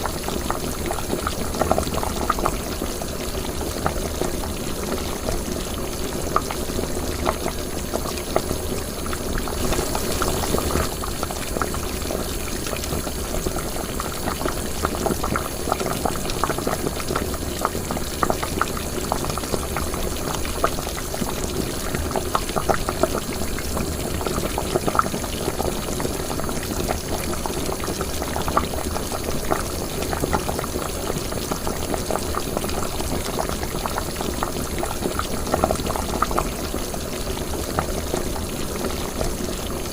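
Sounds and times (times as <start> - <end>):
liquid boiling in a pot: 0.0 - 39.9.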